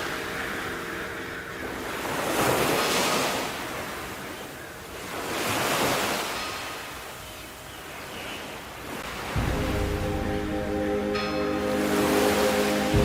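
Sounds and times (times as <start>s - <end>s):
sea waves washing onto shore: 0.0s - 13.0s.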